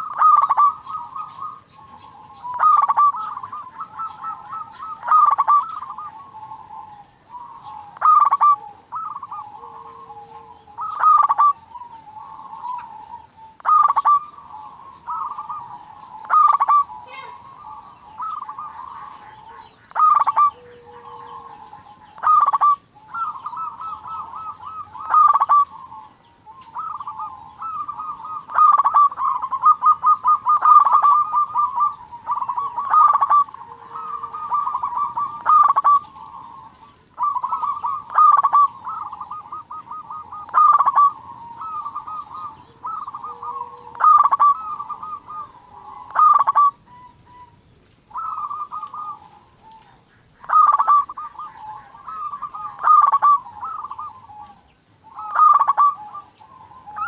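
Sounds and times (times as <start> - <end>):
doves cooing: 0.0 - 57.0.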